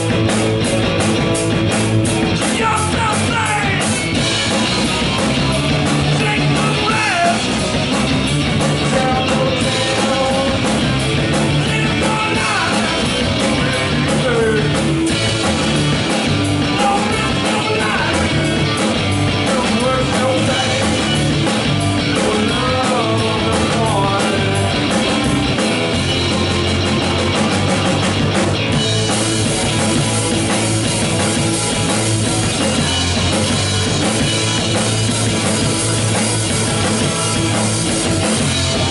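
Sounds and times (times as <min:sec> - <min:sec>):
rock band playing: 0:00.0 - 0:38.9.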